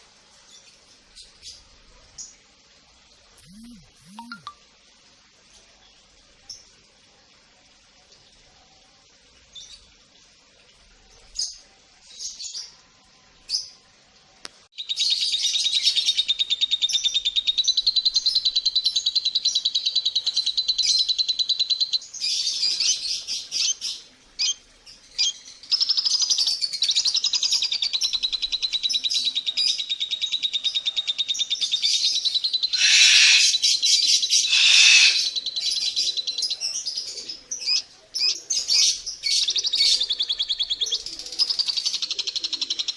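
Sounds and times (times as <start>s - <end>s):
lovebirds chattering: 3.4s - 4.5s, 25.2s - 42.9s.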